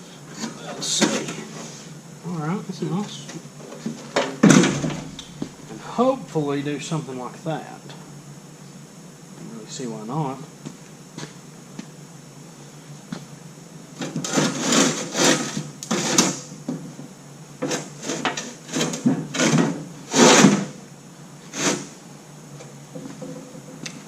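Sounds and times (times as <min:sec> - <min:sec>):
metal box scraping and clunking: 0:04.4 - 0:05.8.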